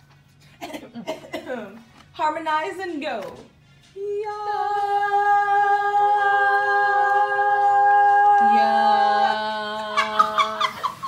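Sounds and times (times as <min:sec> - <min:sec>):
voices singing in harmony: 0:04.0 - 0:11.0.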